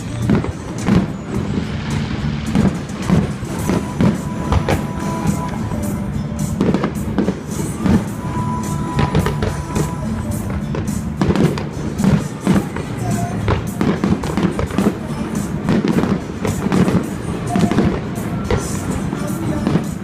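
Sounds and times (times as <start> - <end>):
fireworks banging: 0.0 - 20.0
music playing: 0.0 - 20.0.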